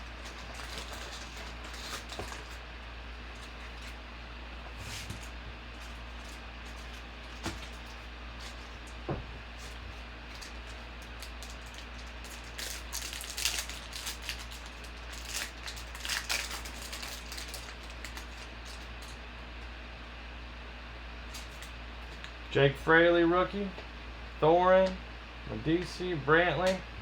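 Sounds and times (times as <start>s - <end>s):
card pack wrappers crinkling: 0.0s - 4.0s, 4.6s - 19.2s, 21.3s - 22.3s
steady low hum: 0.0s - 27.0s.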